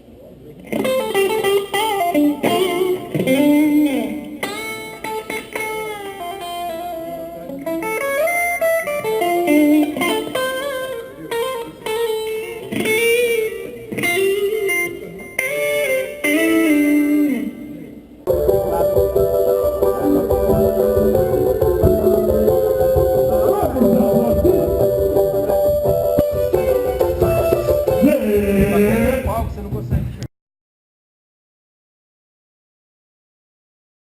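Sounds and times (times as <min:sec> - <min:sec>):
electric guitar lead licks: 0:00.6 - 0:29.3.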